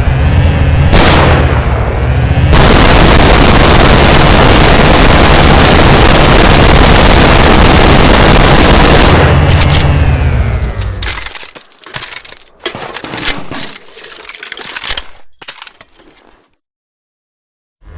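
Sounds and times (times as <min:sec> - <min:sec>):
rapid gunfire: 0:00.9 - 0:10.0
gun barrels spinning whine: 0:01.6 - 0:16.2.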